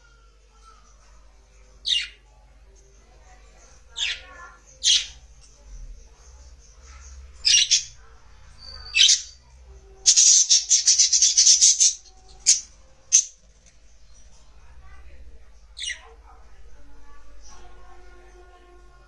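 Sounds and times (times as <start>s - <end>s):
budgerigars chirping: 8.7s - 9.4s, 10.1s - 13.3s.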